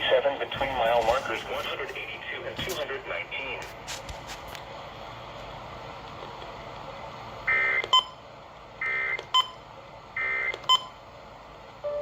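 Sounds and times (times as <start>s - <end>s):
faint radio hiss: 0.0s - 3.8s.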